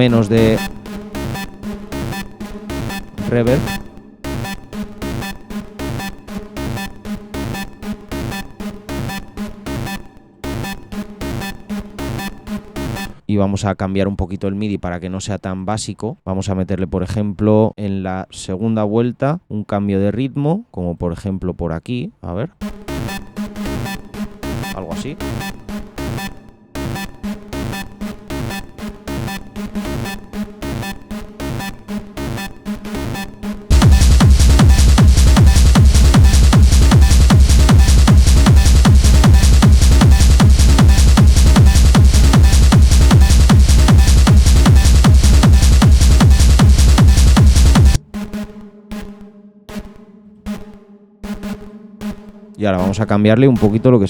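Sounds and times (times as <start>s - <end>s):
synth riff with reverb: 0.0s - 8.6s, 23.0s - 48.0s
distorted kick drums: 0.0s - 9.9s, 27.0s - 48.0s.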